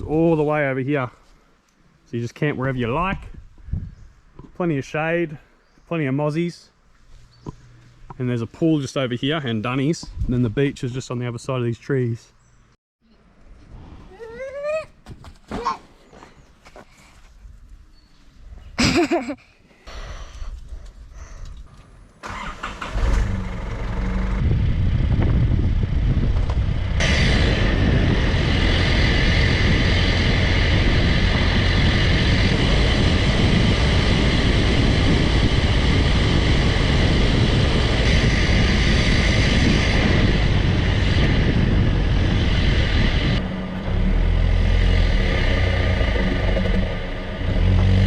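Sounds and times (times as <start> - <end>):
road noise: 21.7 - 48.0
car engine running: 42.9 - 48.0.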